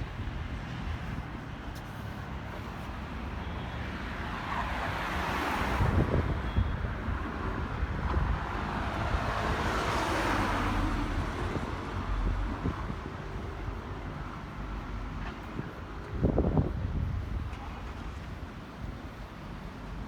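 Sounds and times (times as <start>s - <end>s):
vehicles passing: 0.0s - 20.0s
wind rumble on microphone: 4.4s - 20.0s.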